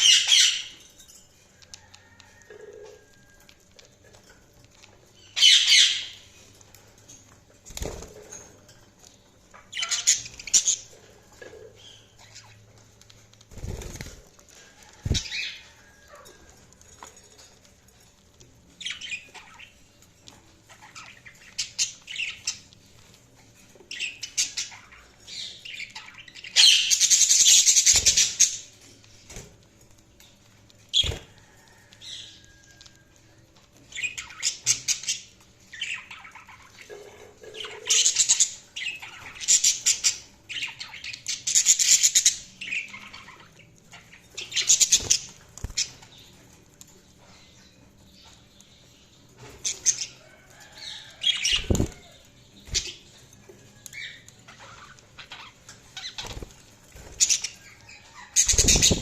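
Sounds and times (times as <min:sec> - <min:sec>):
budgerigars chirping and chattering: 0:00.0 - 0:00.8, 0:05.2 - 0:06.5, 0:09.5 - 0:13.9, 0:18.8 - 0:22.8, 0:23.7 - 0:29.5, 0:33.8 - 0:46.5, 0:47.2 - 0:59.0.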